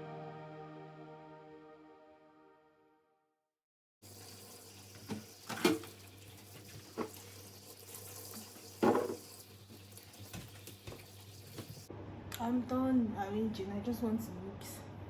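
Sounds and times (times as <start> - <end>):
household items knocking and clattering: 8.8 - 9.2.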